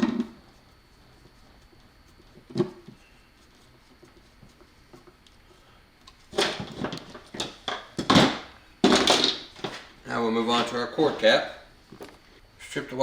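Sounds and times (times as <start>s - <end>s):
tools rustling and clattering: 6.3s - 12.2s.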